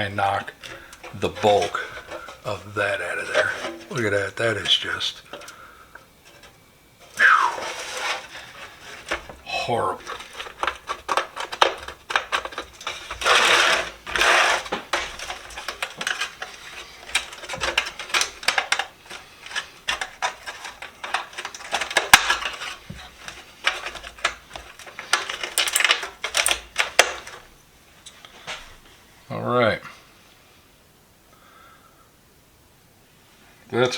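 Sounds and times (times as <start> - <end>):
metallic rattling: 0.0 - 5.6, 6.2 - 27.5
brush scraping rust from metal: 0.0 - 27.5.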